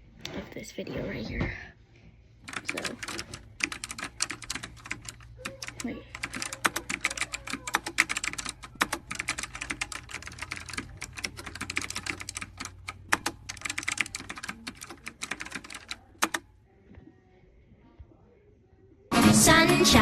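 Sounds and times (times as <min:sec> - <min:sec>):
typing on computer keyboard: 0:02.5 - 0:16.4.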